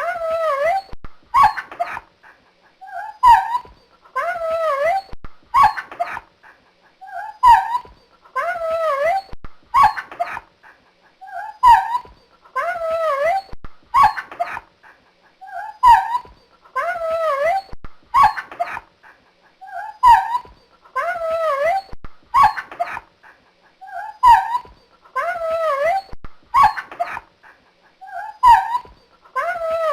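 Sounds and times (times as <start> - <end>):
dog yelping and whimpering: 0.0 - 2.1, 2.8 - 6.3, 7.0 - 10.5, 11.2 - 14.7, 15.4 - 18.9, 19.6 - 23.1, 23.8 - 27.3, 28.0 - 29.9.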